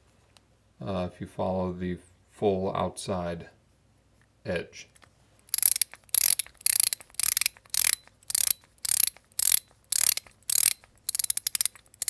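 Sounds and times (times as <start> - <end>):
fine metal ratcheting clicks: 5.5 - 12.0.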